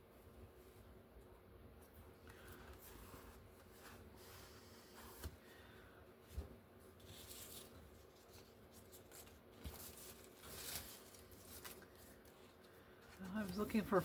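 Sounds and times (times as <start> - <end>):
paper rustling: 6.3 - 14.0.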